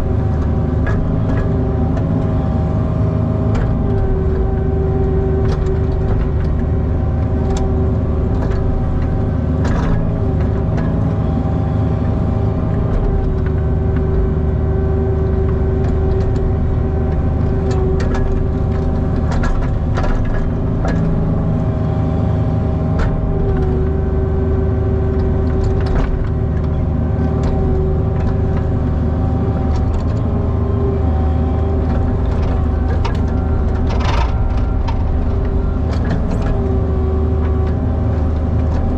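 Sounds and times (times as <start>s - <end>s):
excavator diesel engine running: 0.0s - 38.9s
hydraulic whine: 27.5s - 38.9s
sharp knocks and clicks: 31.8s - 38.9s.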